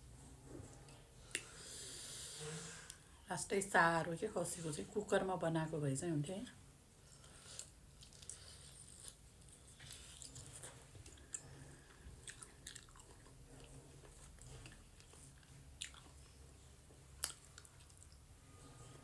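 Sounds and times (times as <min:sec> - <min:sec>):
wet mouth smacks chewing: 0:07.2 - 0:16.4, 0:17.2 - 0:18.3.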